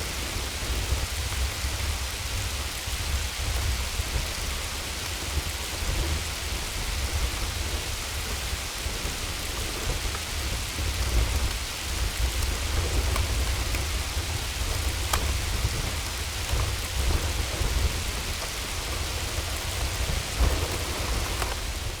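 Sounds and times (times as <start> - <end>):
hail and rain falling: 0.0 - 22.0
hailstones hitting: 9.5 - 22.0.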